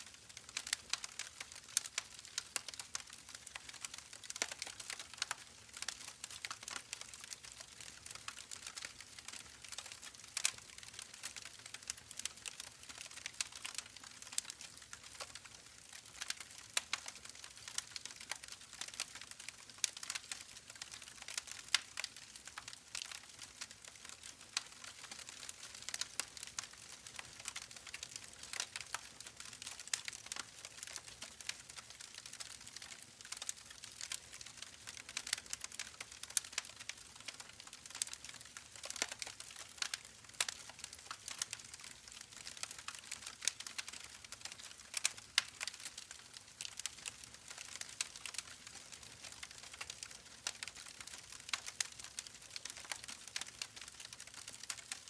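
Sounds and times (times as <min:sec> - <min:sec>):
campfire crackling: 0:00.0 - 0:55.0.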